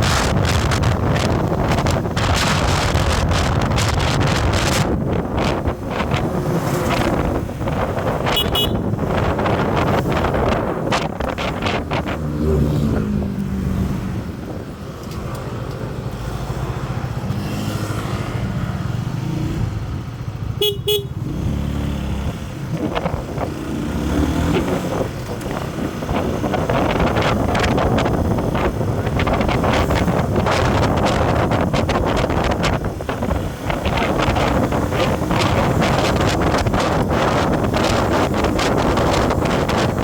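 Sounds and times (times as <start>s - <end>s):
short horn beeps: 8.3s - 8.8s, 20.6s - 21.2s.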